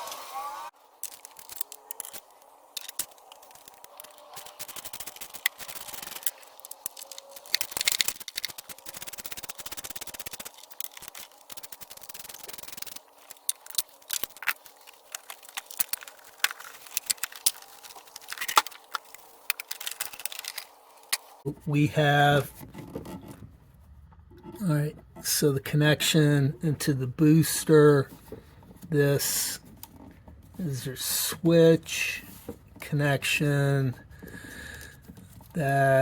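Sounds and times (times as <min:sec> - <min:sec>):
rubbing and scraping: 0:00.7 - 0:25.4
sharp clicks: 0:01.0 - 0:21.3.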